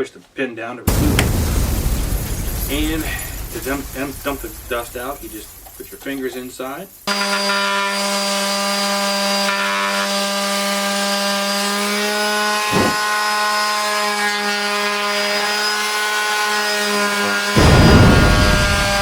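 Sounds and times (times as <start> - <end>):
thump: 0.9 - 5.9
electric sander buzzing: 7.1 - 15.4.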